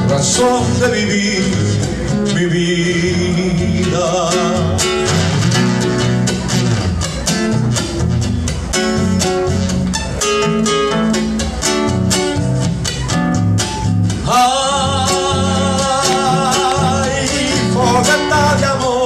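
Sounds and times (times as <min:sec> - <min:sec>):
acoustic guitar strumming: 0:00.0 - 0:19.0
person singing with vibrato: 0:14.2 - 0:19.0.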